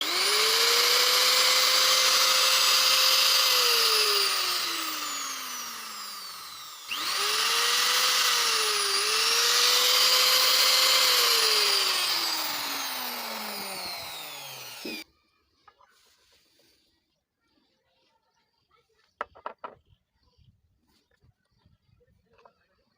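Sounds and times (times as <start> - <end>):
angle grinder whining: 0.0 - 15.0.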